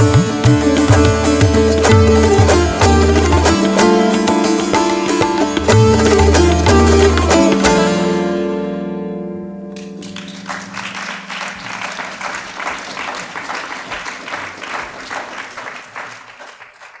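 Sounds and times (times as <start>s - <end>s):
plucked string chord ringing: 0.0s - 12.2s
audience applause: 10.0s - 17.0s.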